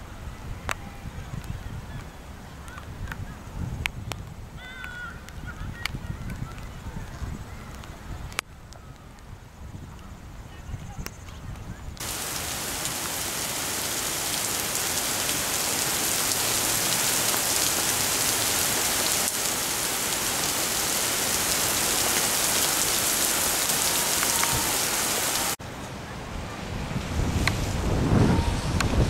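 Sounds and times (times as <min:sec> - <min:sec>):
heavy rain falling: 0:12.0 - 0:29.0.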